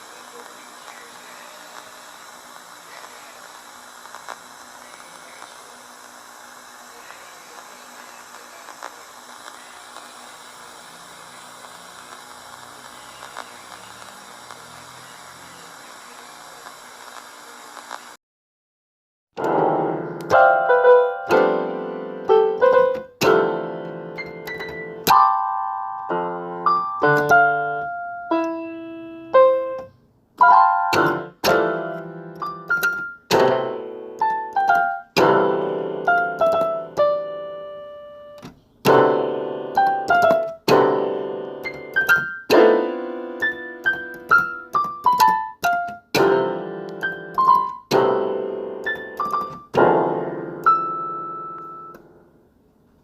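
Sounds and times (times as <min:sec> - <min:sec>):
piano music: 0:19.4 - 0:52.3.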